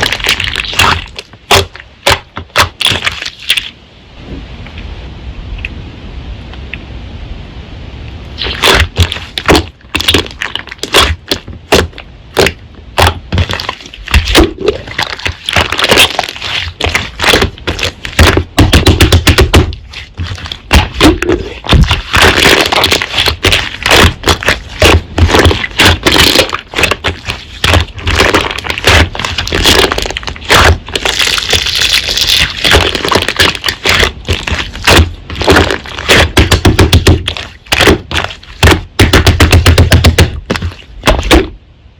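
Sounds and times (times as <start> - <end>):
slime squished by hand popping: 8.4 - 41.6.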